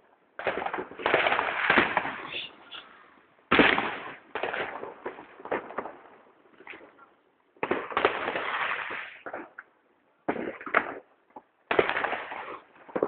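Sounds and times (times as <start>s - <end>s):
fireworks bangs and pops: 0.0s - 2.9s, 3.5s - 13.0s
fireworks crackling hiss: 1.0s - 4.2s, 8.0s - 9.4s.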